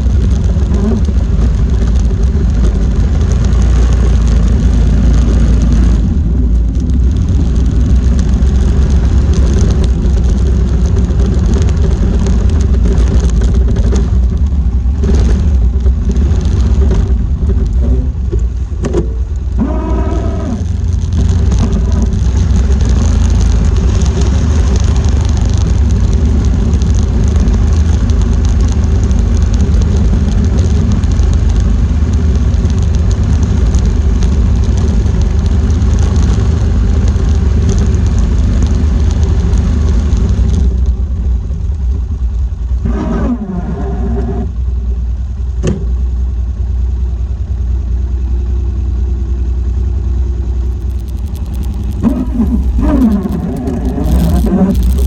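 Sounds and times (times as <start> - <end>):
atv engine rumbling: 0.0 - 55.0
pitched whine: 50.6 - 55.0.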